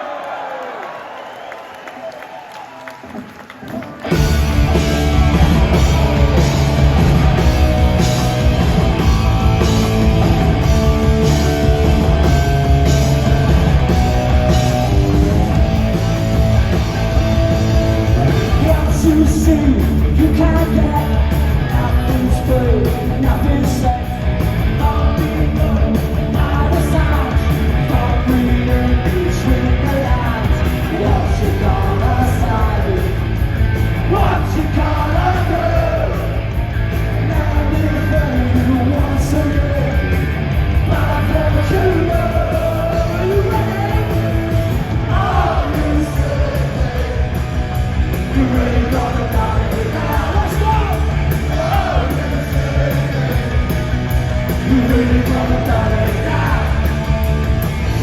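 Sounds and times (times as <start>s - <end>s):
punk rock band playing live: 3.8s - 58.0s
man shouting vocals: 48.4s - 52.9s.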